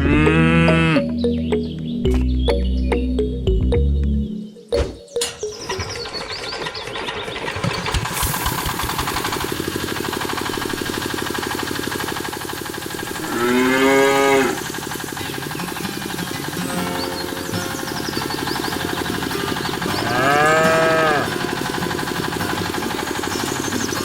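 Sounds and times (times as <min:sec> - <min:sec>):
cow mooing: 0:00.0 - 0:01.1, 0:13.2 - 0:14.6, 0:20.0 - 0:21.4
fast mechanical rattle: 0:05.3 - 0:24.0.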